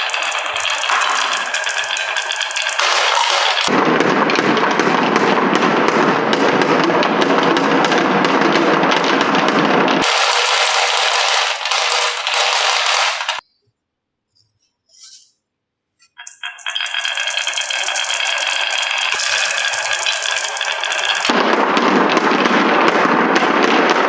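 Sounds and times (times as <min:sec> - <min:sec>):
marbles clattering down wooden run: 0:00.0 - 0:03.8, 0:10.0 - 0:13.4, 0:16.2 - 0:21.4.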